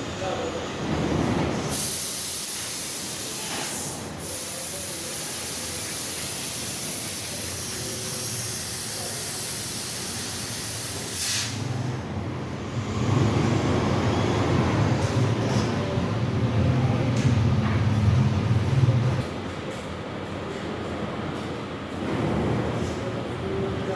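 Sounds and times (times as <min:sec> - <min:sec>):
cutting machine high-pitched hiss: 0:01.7 - 0:11.8.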